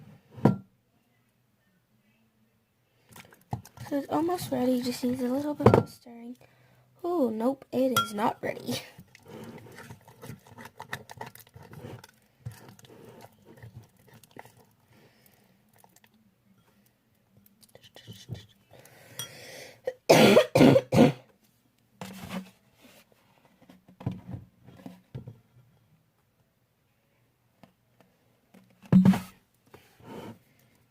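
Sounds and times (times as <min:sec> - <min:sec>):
spoon stirring slime: 0:07.8 - 0:16.1
person coughing: 0:19.9 - 0:21.3.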